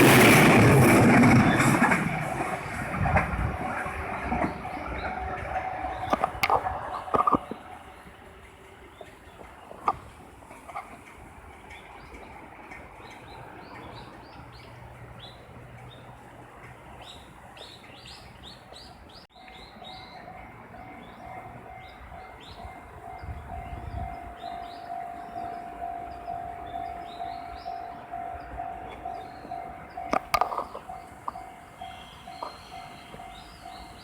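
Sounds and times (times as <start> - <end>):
crossing warning alarm ringing: 0.0 - 10.2, 19.3 - 34.0
train rumble: 0.0 - 34.0
small birds chirping: 13.0 - 34.0.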